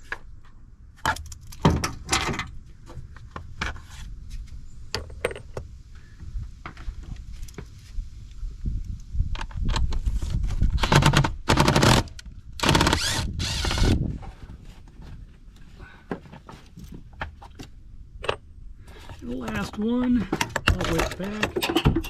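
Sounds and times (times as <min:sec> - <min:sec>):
impact tool whirring: 0:12.6 - 0:14.0
tool and parts clattering: 0:19.4 - 0:22.0.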